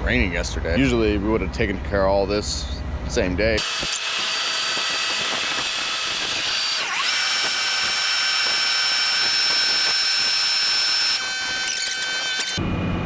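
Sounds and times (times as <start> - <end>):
high-pitched motor whine: 3.6 - 13.0.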